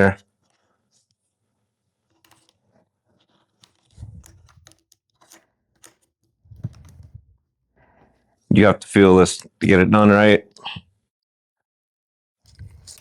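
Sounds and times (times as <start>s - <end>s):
light clicks and rustling: 2.1s - 8.2s, 12.5s - 13.0s
dull handling noise: 2.2s - 8.3s, 12.5s - 13.0s.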